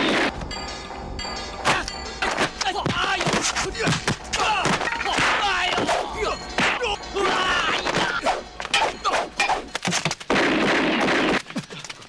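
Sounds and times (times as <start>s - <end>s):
sharp hits and crashes: 0.0s - 11.5s
people shouting: 1.7s - 9.7s.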